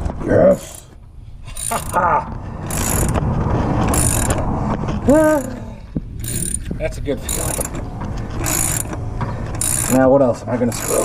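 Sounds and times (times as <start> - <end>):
ratchet wrench clicking: 0.6 - 2.0, 2.7 - 3.2, 3.9 - 4.4, 6.2 - 7.8, 8.4 - 9.0, 9.6 - 10.1, 10.7 - 11.0.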